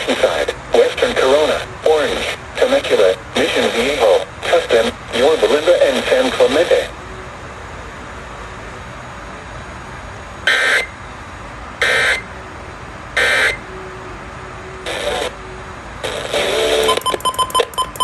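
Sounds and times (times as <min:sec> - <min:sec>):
choppy electronic beeps: 0:16.8 - 0:18.0
warbling two-tone data tones: 0:16.8 - 0:18.0.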